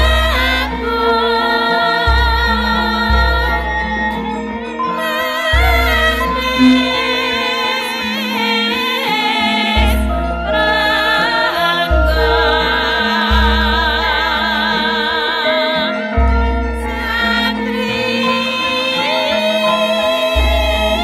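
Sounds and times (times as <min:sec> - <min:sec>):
singer with strong vibrato: 0:04.9 - 0:21.0
deep bass notes: 0:06.4 - 0:07.4.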